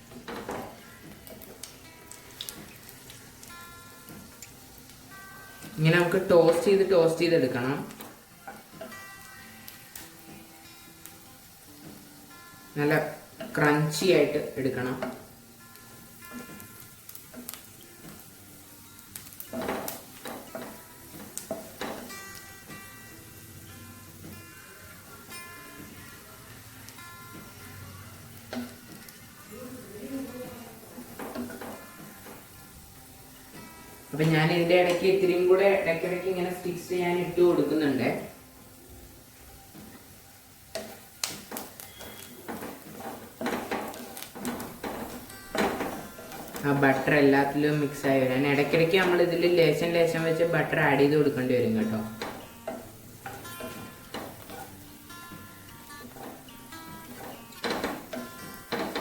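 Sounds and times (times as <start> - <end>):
bread sizzling in butter: 0.0 - 59.0
spatula scraping a pan: 40.8 - 47.0, 52.0 - 54.8.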